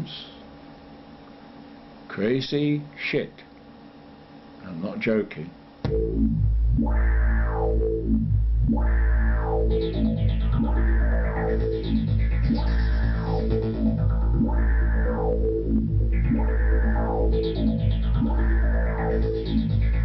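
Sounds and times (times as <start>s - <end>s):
deep bass drone: 5.8s - 20.0s
effected sweep falling in pitch: 5.8s - 20.0s.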